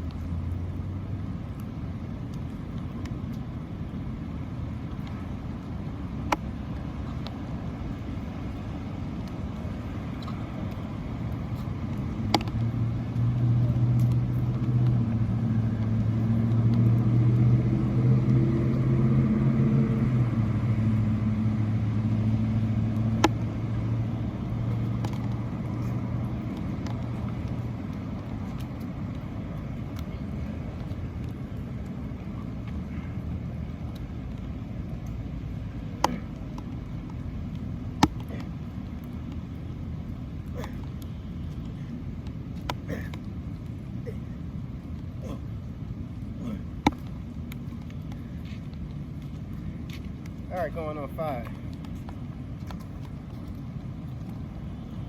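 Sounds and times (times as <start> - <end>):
vehicle engine passing by: 11.7 - 34.5.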